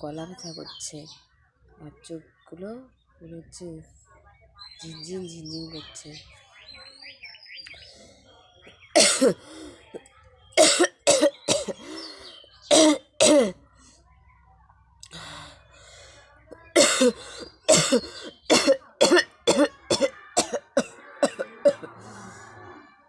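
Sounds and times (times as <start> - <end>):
woman coughing hard: 9.0 - 9.4, 10.6 - 11.8, 12.7 - 13.6, 16.8 - 21.9.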